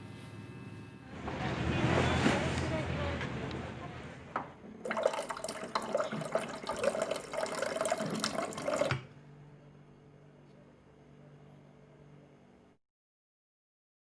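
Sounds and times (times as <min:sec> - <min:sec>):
water running from a tap: 0:04.8 - 0:09.1.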